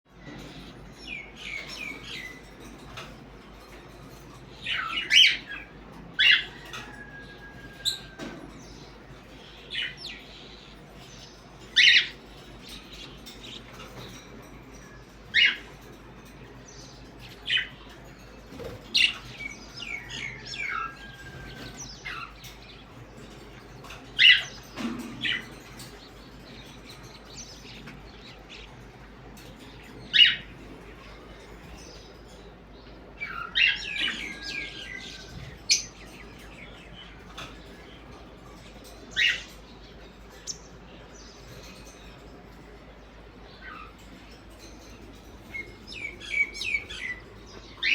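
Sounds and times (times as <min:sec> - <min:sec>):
parrots calling: 0:04.1 - 0:15.9.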